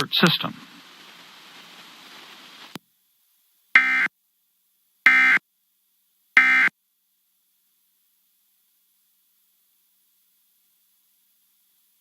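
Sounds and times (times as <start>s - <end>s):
faint hiss: 0.0s - 12.0s
electronic data bursts: 3.8s - 4.1s, 5.1s - 5.4s, 6.4s - 6.7s.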